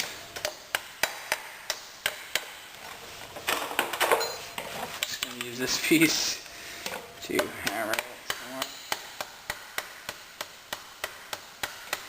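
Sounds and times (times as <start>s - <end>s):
scraping handling noise: 2.8s - 5.6s.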